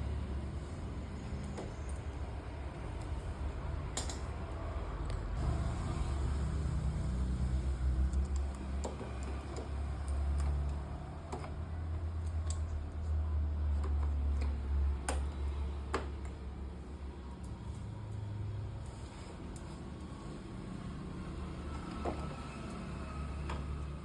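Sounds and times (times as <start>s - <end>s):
light clicks and taps: 8.0s - 13.1s.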